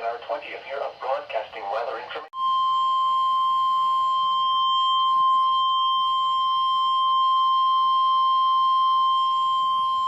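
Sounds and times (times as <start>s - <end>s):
steady warning beep: 2.4s - 10.0s.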